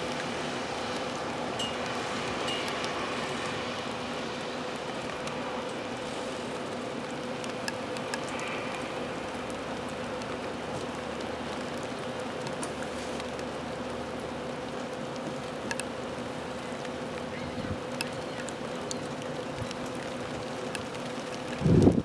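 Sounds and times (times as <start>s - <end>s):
steady rain falling: 0.0s - 22.0s
drop ticks: 15.6s - 15.9s.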